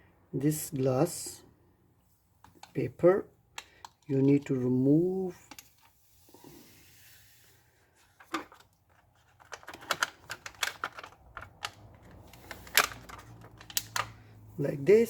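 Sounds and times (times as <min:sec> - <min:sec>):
protective film peeling crackle: 0:09.5 - 0:14.1.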